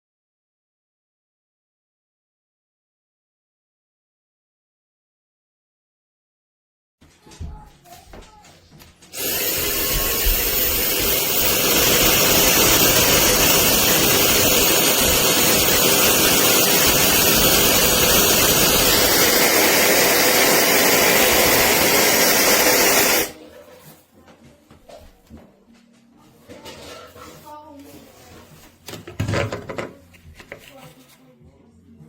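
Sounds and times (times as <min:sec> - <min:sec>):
hair dryer blowing air: 0:09.1 - 0:23.4.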